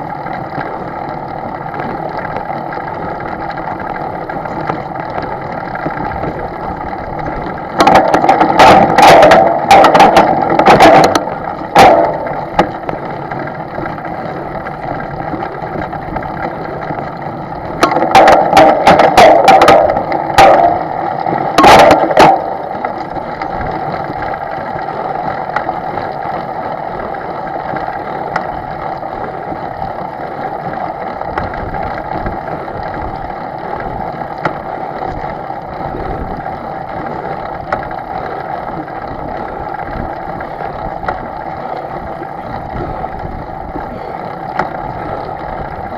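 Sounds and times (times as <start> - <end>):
boat engine running: 0.0 - 45.9
loud knocking and rattling: 7.4 - 12.9, 17.7 - 23.0.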